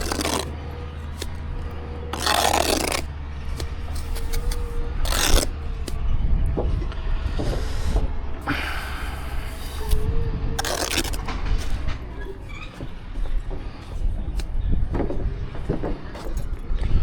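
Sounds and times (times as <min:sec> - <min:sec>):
trowel scraping mortar: 0:00.0 - 0:06.0, 0:07.3 - 0:14.6.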